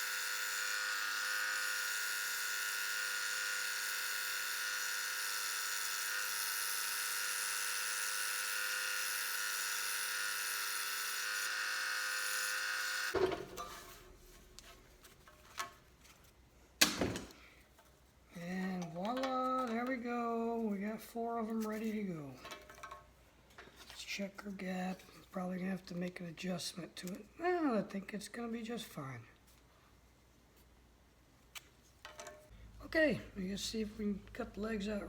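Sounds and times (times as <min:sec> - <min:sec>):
scroll saw running: 0:00.0 - 0:13.2.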